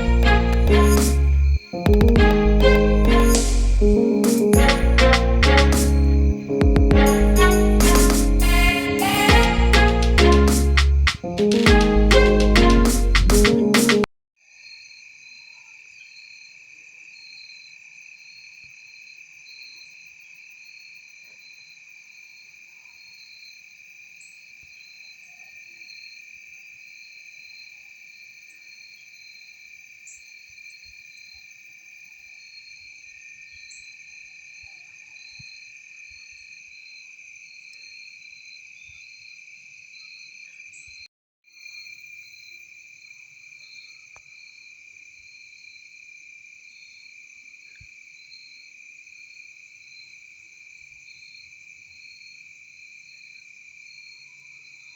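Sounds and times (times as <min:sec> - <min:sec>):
crickets and insects chirping: 0:00.0 - 0:01.8.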